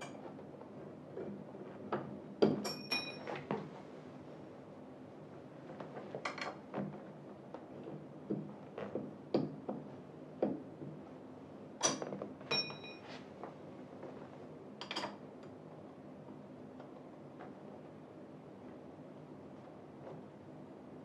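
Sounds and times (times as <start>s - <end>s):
short metallic ring: 2.7s - 3.3s, 11.9s - 13.1s.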